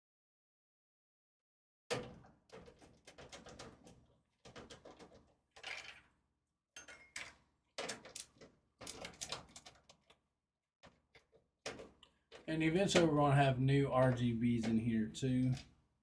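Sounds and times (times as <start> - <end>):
computer parts clicking and rattling: 1.9 - 6.2, 6.8 - 10.2, 10.8 - 15.8.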